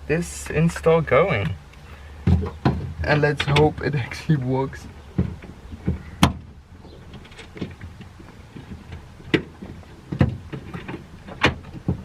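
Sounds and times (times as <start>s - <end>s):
hardware clicking and knocking: 2.2s - 4.0s, 4.8s - 12.0s.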